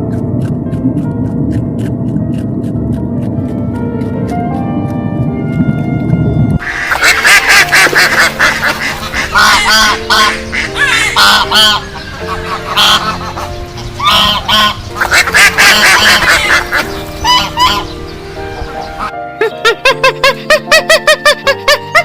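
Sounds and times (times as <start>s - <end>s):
sustained music tones: 0.0s - 22.0s
waterfowl honking and quacking: 6.6s - 19.1s.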